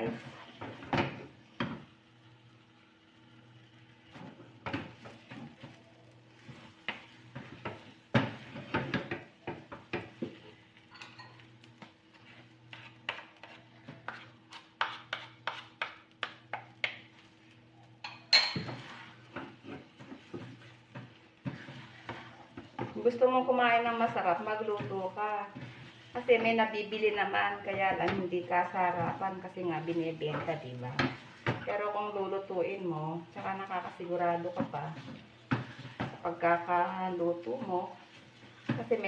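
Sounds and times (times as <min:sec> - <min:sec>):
utensil scraping a wok: 0:00.0 - 0:39.0.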